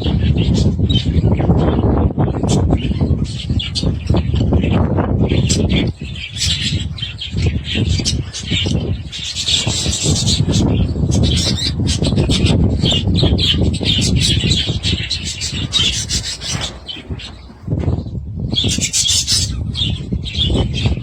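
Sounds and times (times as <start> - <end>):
budgerigars chirping and chattering: 0.0 - 21.0
low rustling noise: 8.8 - 20.2.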